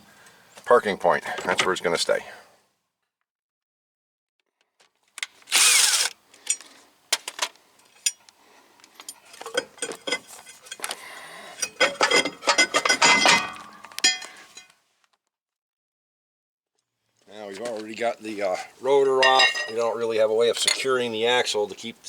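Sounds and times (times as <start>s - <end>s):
metal parts and tools clanking: 5.2s - 8.2s, 8.9s - 14.7s, 19.2s - 19.9s, 20.6s - 20.9s.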